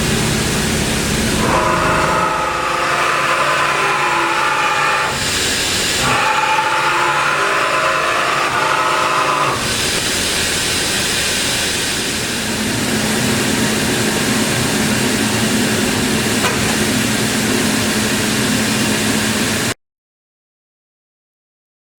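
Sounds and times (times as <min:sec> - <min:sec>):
machine whine: 0:00.0 - 0:19.8
loud hiss: 0:04.3 - 0:06.8, 0:09.1 - 0:19.8.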